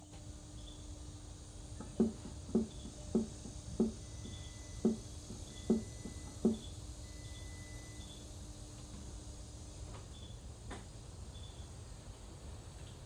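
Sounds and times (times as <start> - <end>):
short dull thumps: 1.8 - 6.7.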